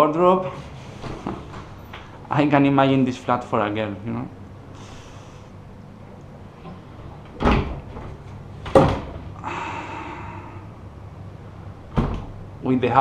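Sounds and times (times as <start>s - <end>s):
wardrobe door sliding: 6.5s - 9.2s.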